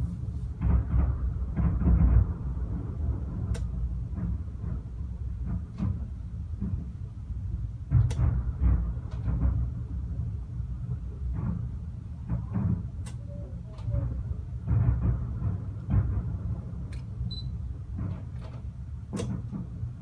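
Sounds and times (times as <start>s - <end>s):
distant fireworks rumble: 0.0s - 20.0s
fireworks sharp bangs: 0.5s - 5.6s, 13.9s - 18.1s.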